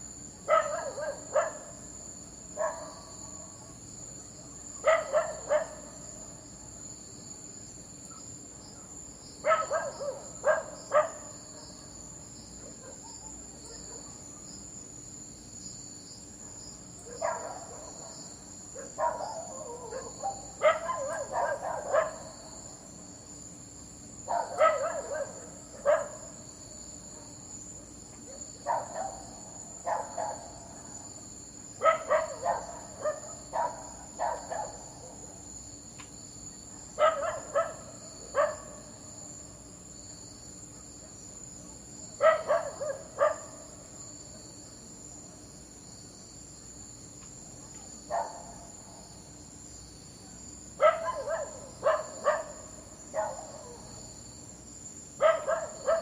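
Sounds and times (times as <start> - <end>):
crickets chirring: 0.0 - 56.0
dog barking: 0.5 - 1.8, 2.6 - 3.1, 4.8 - 6.0, 9.4 - 11.4, 12.6 - 14.2, 16.4 - 22.3, 24.3 - 26.3, 28.3 - 30.7, 31.8 - 35.2, 36.9 - 38.9, 42.2 - 43.7, 47.6 - 48.7, 50.8 - 54.0, 55.2 - 56.0.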